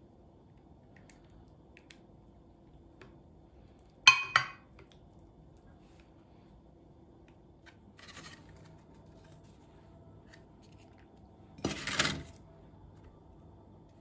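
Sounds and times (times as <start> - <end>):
dishes clinking: 4.1 - 4.7
dish scraping: 11.6 - 12.4.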